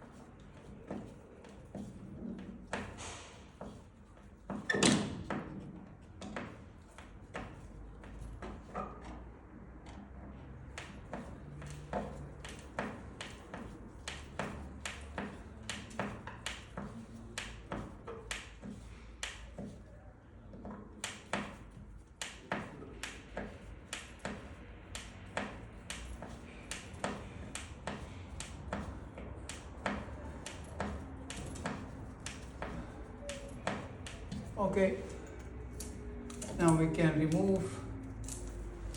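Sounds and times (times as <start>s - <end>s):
light sharp clicks and taps: 10.6s - 19.8s, 20.6s - 38.9s.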